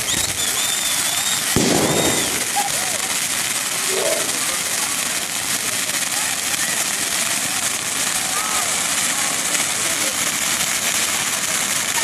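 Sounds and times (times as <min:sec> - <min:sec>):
firework whistle: 0:00.0 - 0:04.9
firework bursting with bang: 0:00.0 - 0:12.0.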